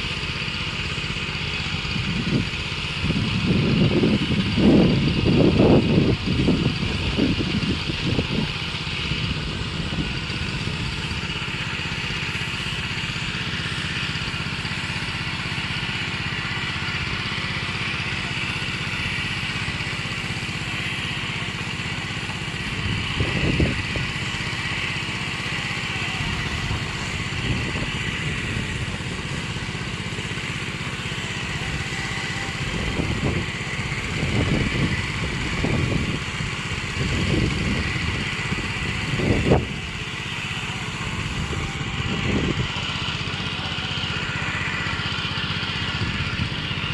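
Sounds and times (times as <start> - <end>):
small engine and pump running: 0.0 - 46.9
wind buffeting microphone: 1.7 - 11.3, 21.8 - 24.8, 26.2 - 29.6, 31.4 - 40.2, 40.9 - 43.2
spray hiss: 11.3 - 42.3.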